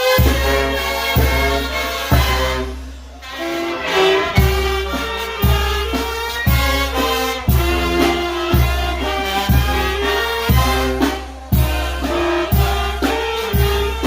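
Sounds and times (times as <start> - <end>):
brass band playing: 0.0 - 14.0.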